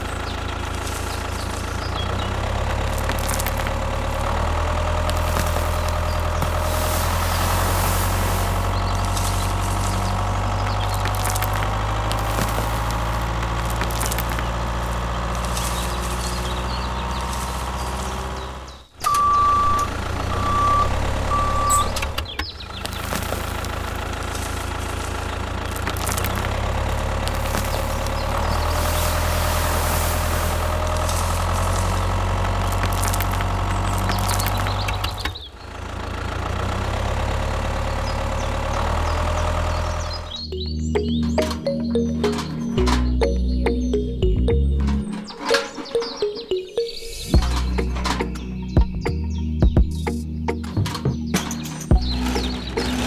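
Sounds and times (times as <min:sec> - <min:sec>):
vehicle engine hum: 0:00.0 - 0:53.0
reversing beeps: 0:19.0 - 0:22.2, 0:40.4 - 0:49.0.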